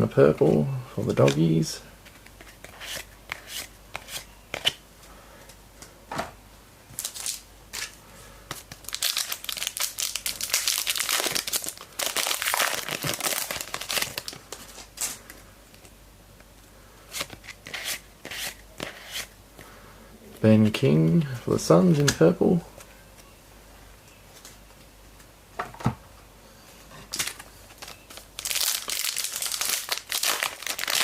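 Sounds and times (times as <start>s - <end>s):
card pack wrapper crinkling: 8.7s - 15.2s, 27.2s - 31.0s.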